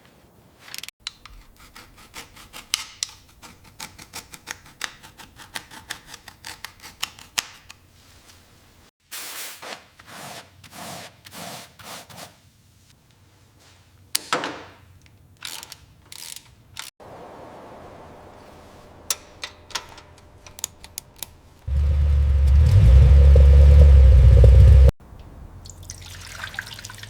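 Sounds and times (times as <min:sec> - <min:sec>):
sharp clicks and scrapes: 0:00.6 - 0:07.8, 0:19.1 - 0:21.7.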